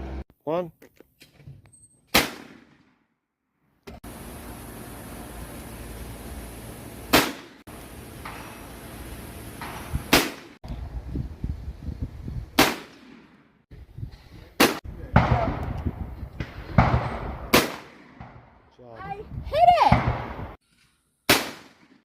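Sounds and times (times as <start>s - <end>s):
shotgun shots: 2.1s - 3.0s, 7.1s - 7.6s, 9.6s - 10.6s, 12.6s - 13.4s, 14.6s - 15.8s, 16.4s - 18.6s, 21.3s - 22.0s.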